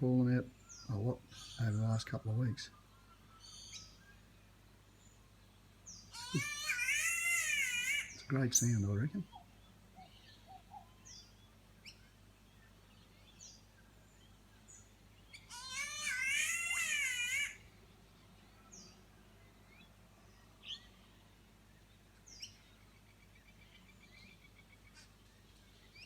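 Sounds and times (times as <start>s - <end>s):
birds chirping: 0.0s - 26.0s
harsh wavering bird call: 6.1s - 8.7s, 15.4s - 17.7s.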